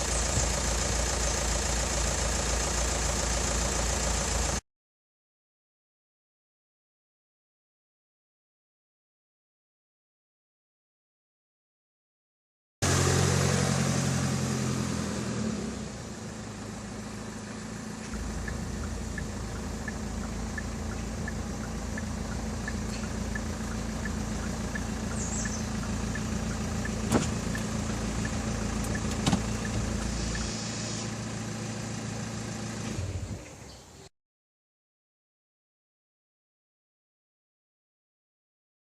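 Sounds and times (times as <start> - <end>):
car engine idling: 0.0 - 4.6, 12.8 - 33.8
light ticking: 18.0 - 30.5.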